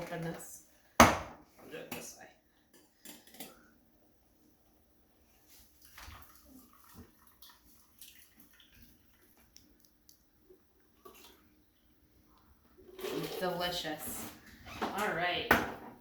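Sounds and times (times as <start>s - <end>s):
liquid trickling as poured: 5.7s - 13.6s.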